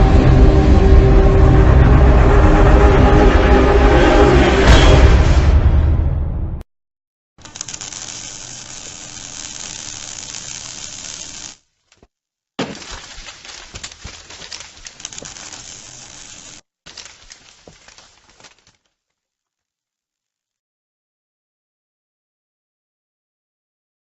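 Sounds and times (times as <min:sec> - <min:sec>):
debris and glass breaking: 0:12.6 - 0:18.9.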